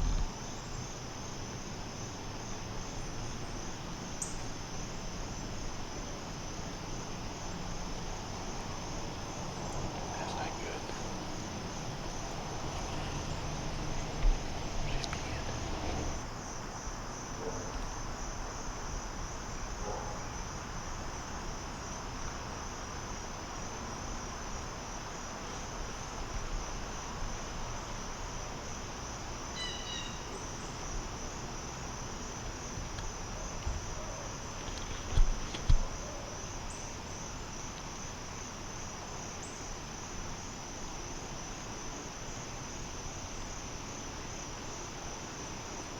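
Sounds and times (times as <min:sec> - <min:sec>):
low thump: 0:00.0 - 0:00.4
crickets trilling: 0:00.0 - 0:45.9.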